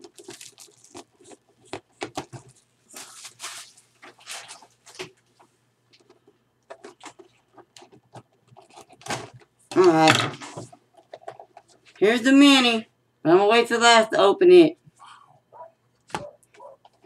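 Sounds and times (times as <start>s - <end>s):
foil packs rustling and crinkling: 0.0s - 5.2s.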